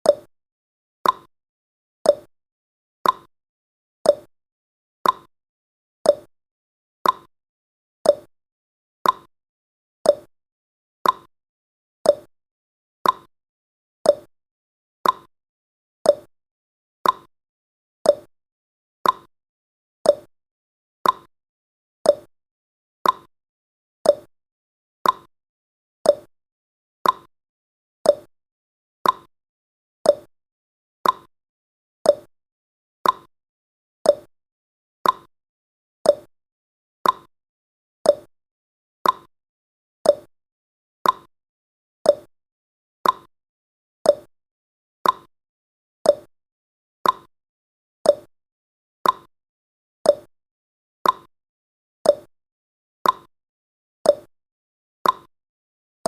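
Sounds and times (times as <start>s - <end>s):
clock ticking: 31.0s - 31.3s, 35.0s - 35.3s, 37.0s - 37.3s, 39.0s - 39.3s, 43.0s - 43.3s, 47.0s - 47.3s, 55.0s - 55.3s.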